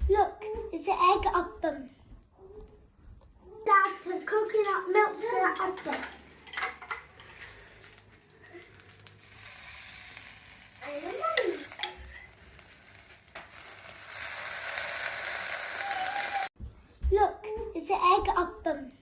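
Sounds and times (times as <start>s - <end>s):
batter sizzling in a hot pan: 3.8s - 16.6s.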